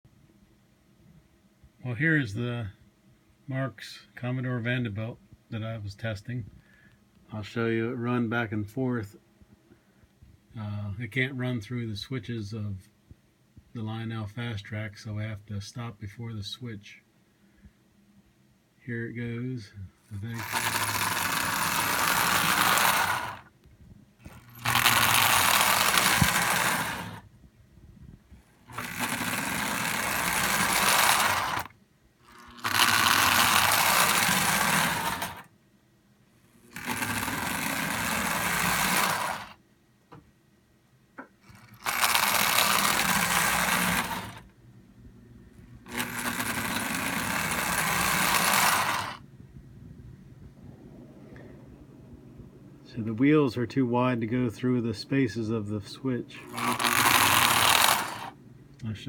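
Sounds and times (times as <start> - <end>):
model train running on track: 20.2 - 23.5, 24.3 - 27.2, 28.7 - 31.7, 32.3 - 35.4, 36.7 - 39.6, 41.5 - 44.4, 45.9 - 49.2, 56.4 - 58.3.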